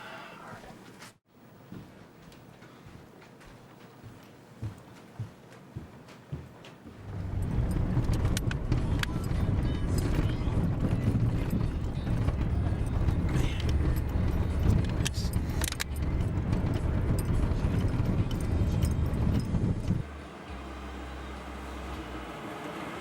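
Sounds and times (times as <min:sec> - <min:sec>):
steady low hum: 0:06.9 - 0:22.4
rattles and clicks: 0:07.0 - 0:20.0
car engine rumble: 0:07.0 - 0:23.0.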